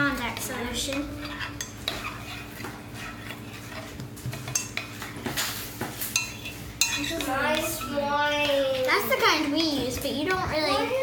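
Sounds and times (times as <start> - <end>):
spoon stirring slime in bowl: 0.0 - 11.0
spoon clinking against bowl: 6.0 - 8.0.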